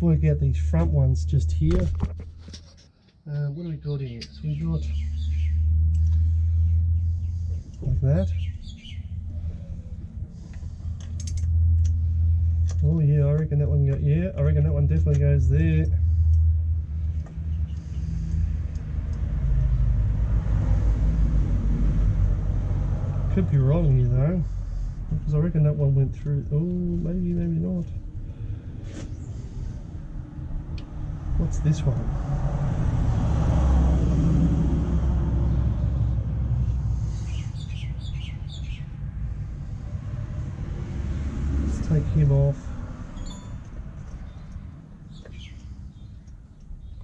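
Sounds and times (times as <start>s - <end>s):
low rumble: 0.0s - 47.0s
birds chirping: 3.4s - 11.1s, 17.0s - 18.8s, 35.5s - 39.8s, 41.8s - 47.0s.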